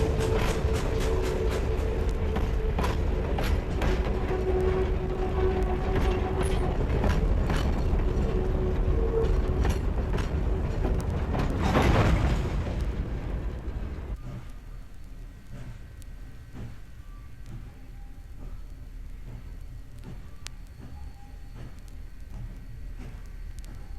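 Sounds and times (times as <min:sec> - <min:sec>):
wheels clicking over rail joints: 0:00.0 - 0:14.6
train rumbling on track: 0:00.0 - 0:23.9.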